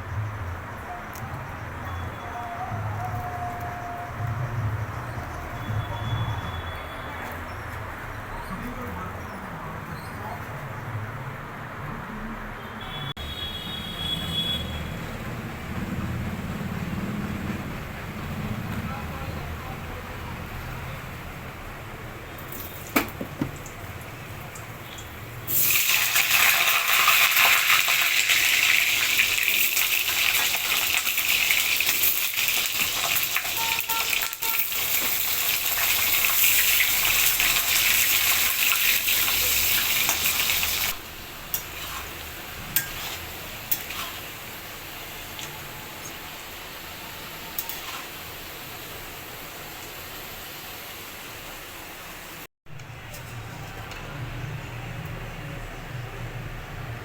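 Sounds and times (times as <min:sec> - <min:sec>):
kitchen tap running: 0:22.8 - 0:41.0.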